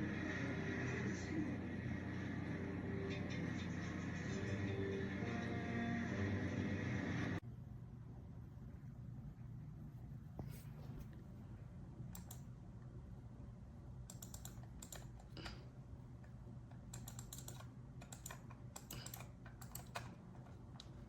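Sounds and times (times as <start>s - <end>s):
steady low hum: 0.0s - 21.0s
computer keyboard typing: 12.1s - 12.5s, 14.1s - 15.5s, 16.8s - 20.2s.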